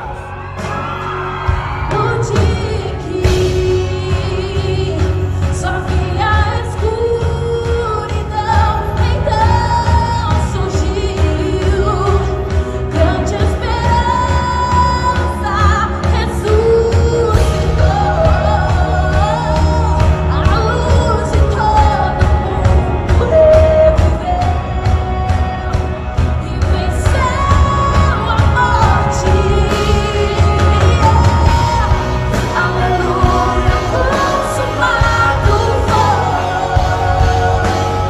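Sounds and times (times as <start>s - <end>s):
band with heavy bass and drums: 0.0s - 38.0s.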